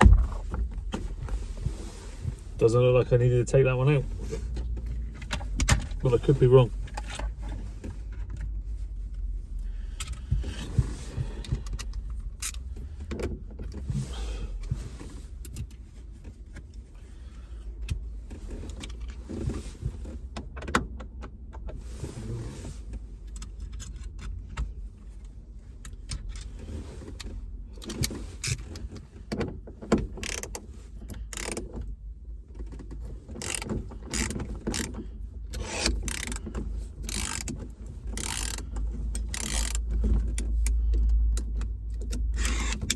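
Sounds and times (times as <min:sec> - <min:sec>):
hand tools clicking and knocking: 0:33.4 - 0:35.0, 0:35.6 - 0:40.4.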